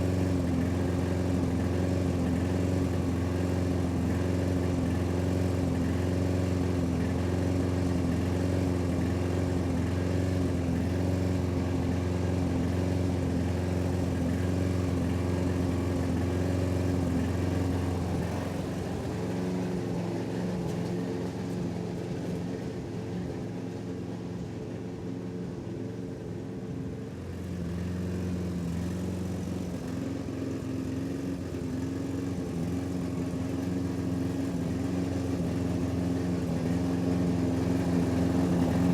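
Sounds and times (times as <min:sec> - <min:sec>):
lawnmower engine cutting grass: 0:00.0 - 0:38.9.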